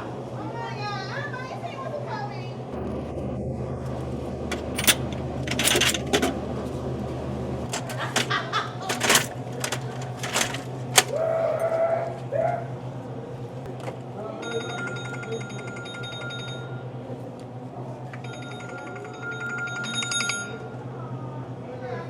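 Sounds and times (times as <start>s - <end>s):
low electrical hum: 0.0s - 22.0s
products clattering in vending machine: 4.5s - 6.6s, 7.6s - 11.2s.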